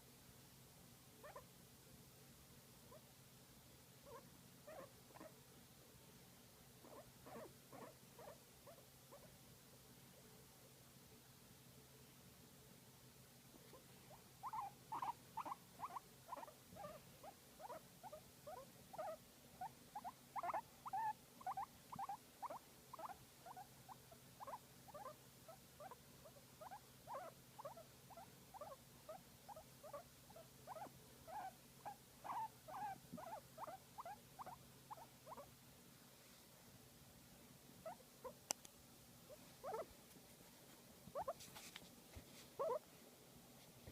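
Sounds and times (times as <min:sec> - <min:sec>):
guinea pig squeaking: 0:01.2 - 0:01.5, 0:04.0 - 0:05.4, 0:06.8 - 0:09.4, 0:13.7 - 0:35.5, 0:37.8 - 0:38.6, 0:39.3 - 0:40.0, 0:41.1 - 0:41.4, 0:42.6 - 0:42.9.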